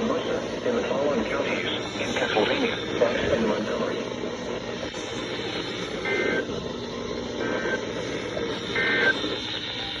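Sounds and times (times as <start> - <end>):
radio static hiss: 0.0 - 10.0
two-pitch digital data bursts: 4.9 - 6.5, 7.4 - 10.0.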